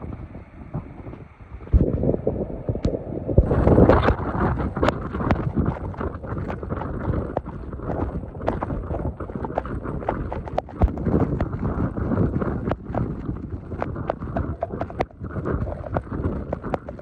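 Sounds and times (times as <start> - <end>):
storm wind buffeting microphone: 0.0 - 17.0
sharp clicks and knocks: 12.4 - 17.0.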